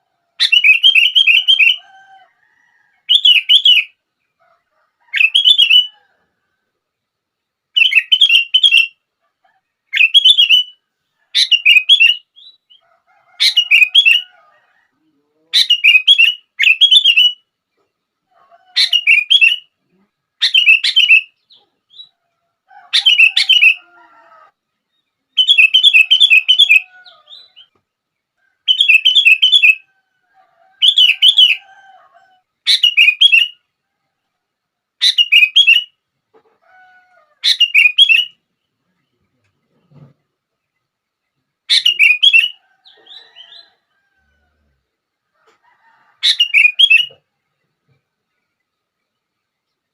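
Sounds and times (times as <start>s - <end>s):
bulbul singing whistled phrases: 0.4s - 1.8s, 7.8s - 9.0s, 9.9s - 10.8s, 11.4s - 12.8s, 15.6s - 17.5s, 20.4s - 22.2s, 23.0s - 23.8s, 25.3s - 27.7s, 28.7s - 29.9s, 32.7s - 33.6s, 35.0s - 36.0s, 37.5s - 38.4s, 41.7s - 43.7s, 46.3s - 47.2s.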